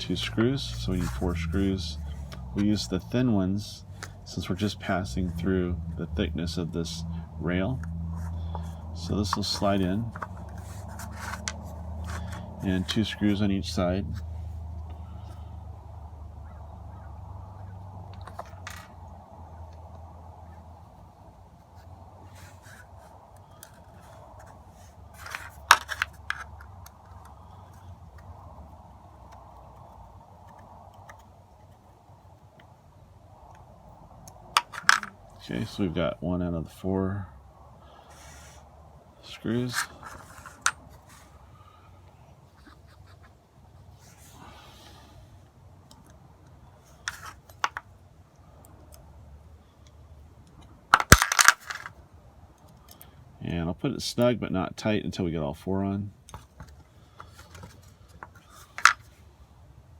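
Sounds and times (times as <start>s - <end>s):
soft rustle: 0.0s - 6.2s, 6.8s - 15.6s, 21.5s - 32.6s, 37.9s - 48.0s, 56.3s - 59.4s
metal parts clicking: 34.6s - 35.1s, 50.9s - 51.9s.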